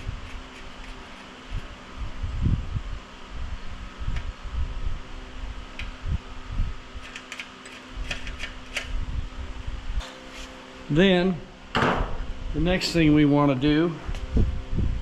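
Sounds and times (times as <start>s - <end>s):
steady hum: 0.0s - 15.0s.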